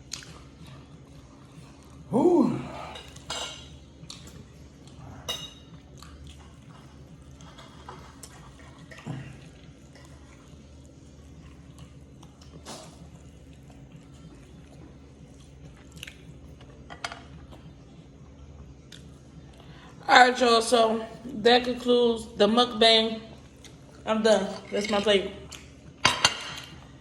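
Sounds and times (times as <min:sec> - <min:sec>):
soft chewing: 0:00.0 - 0:02.1, 0:02.8 - 0:20.0, 0:23.4 - 0:24.0, 0:25.4 - 0:26.0
steady low hum: 0:00.0 - 0:27.0.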